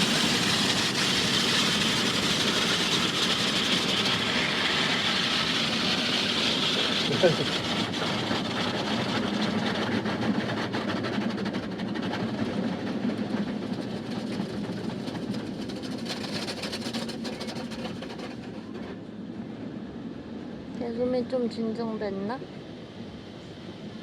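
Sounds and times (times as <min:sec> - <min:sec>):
car wash rushing water: 0:00.0 - 0:10.4.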